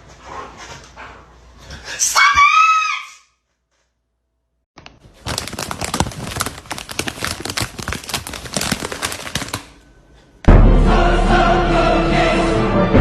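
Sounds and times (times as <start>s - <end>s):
dense crackling and crinkling: 4.8s - 9.8s
loud music: 10.5s - 13.0s.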